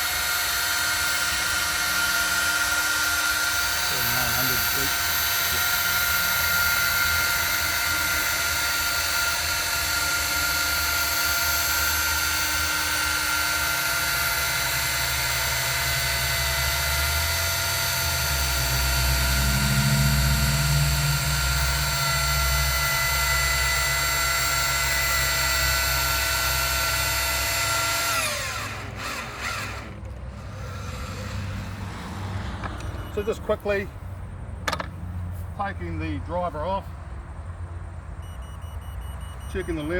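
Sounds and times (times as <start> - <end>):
ground screw driver motor whine: 0.0 - 34.0, 39.2 - 39.9
low rumble under load: 17.7 - 24.5, 25.7 - 38.3.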